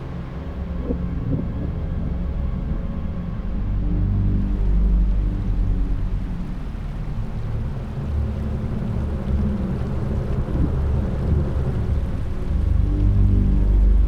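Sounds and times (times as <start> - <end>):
deep low rumble: 0.0 - 6.8.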